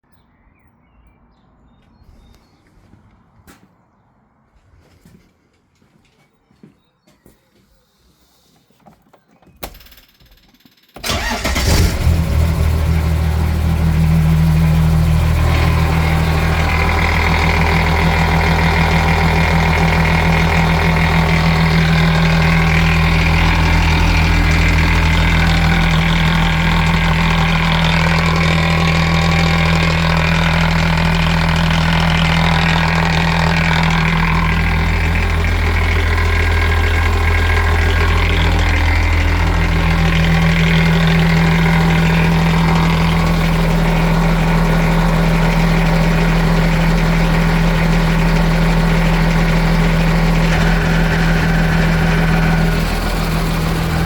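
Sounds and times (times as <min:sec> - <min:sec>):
boat engine starting and idling: 0:09.5 - 0:54.0
ignition click: 0:09.6 - 0:12.2.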